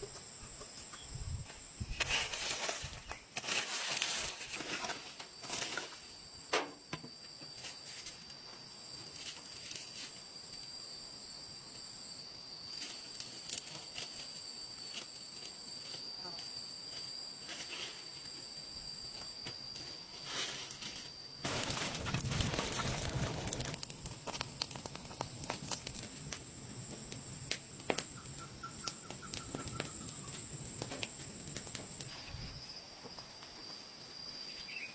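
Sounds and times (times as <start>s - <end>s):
insects trilling: 0.0s - 34.9s
sharp clicks and crackles: 21.5s - 32.1s.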